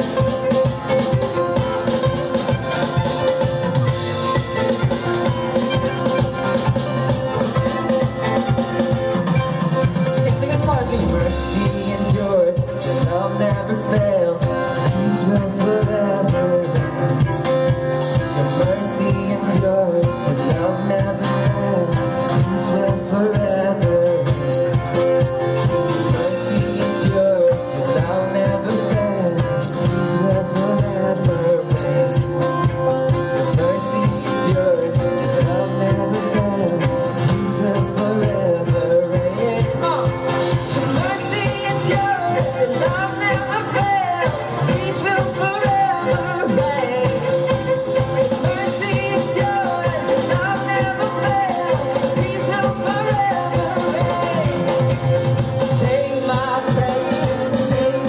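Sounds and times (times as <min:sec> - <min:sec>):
wavering lead melody: 0:00.0 - 0:13.7
drums steady beat: 0:00.0 - 0:58.0
guitar chords: 0:00.0 - 0:58.0
worship band playing slow song: 0:00.0 - 0:58.0.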